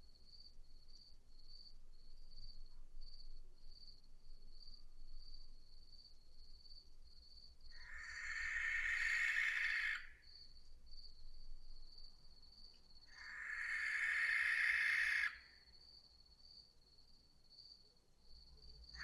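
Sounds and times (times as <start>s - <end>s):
barn owl screeching: 7.8s - 10.2s, 13.2s - 15.5s.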